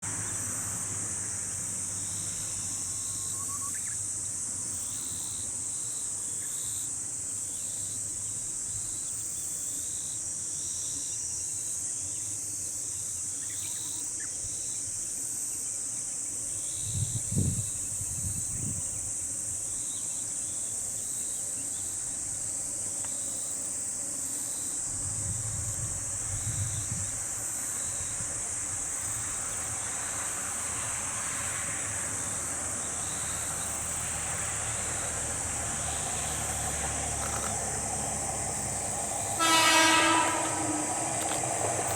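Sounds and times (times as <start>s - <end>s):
insects droning: 0.0s - 41.9s
insect pulsing: 32.2s - 41.9s.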